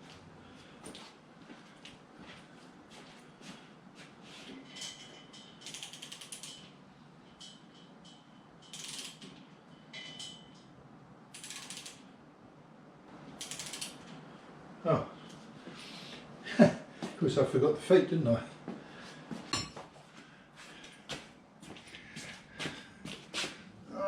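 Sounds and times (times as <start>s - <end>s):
ratchet clicking: 5.6s - 6.7s, 8.6s - 9.3s, 11.3s - 12.0s, 13.4s - 14.1s.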